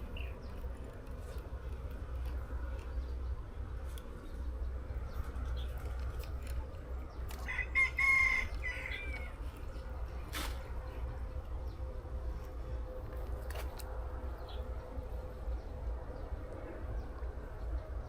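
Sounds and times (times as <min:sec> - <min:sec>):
low background rumble: 0:00.0 - 0:18.0
rooster crowing: 0:07.4 - 0:09.5.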